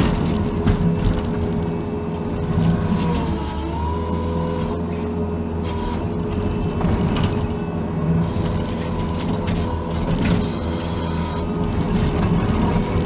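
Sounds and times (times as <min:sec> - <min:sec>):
machine knocks and clanks: 0:00.0 - 0:01.7
diesel engine running: 0:00.0 - 0:13.0.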